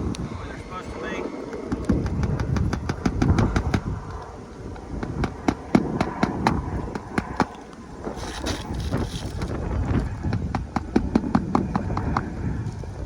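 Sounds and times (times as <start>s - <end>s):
hammer striking roofing nails: 1.7s - 3.9s, 5.0s - 7.5s.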